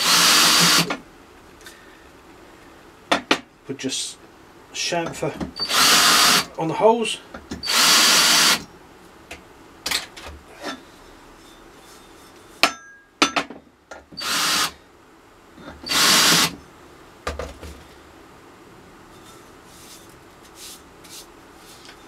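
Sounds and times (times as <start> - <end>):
power drill bursts: 0.0 - 1.0, 5.6 - 6.5, 7.6 - 8.6, 14.2 - 14.7, 15.8 - 16.6
knocks of parts handled: 17.2 - 17.9.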